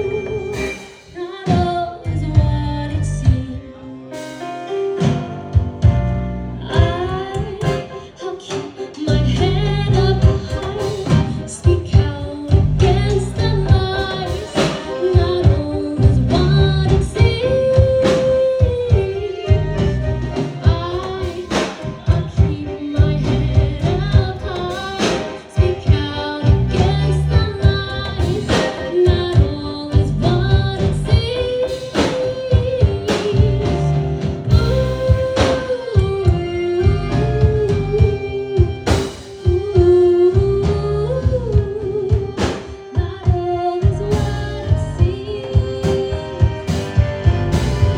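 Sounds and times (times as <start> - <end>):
person singing: 0.0 - 5.1, 6.6 - 47.9
live band playing a song: 0.0 - 47.9
heavy bass line: 2.1 - 3.4, 9.1 - 17.8, 19.5 - 20.6, 23.0 - 24.7, 25.6 - 28.5, 29.3 - 31.3, 33.4 - 35.5, 36.3 - 38.2, 43.9 - 45.1, 46.7 - 47.9
drum hits: 5.0 - 47.9.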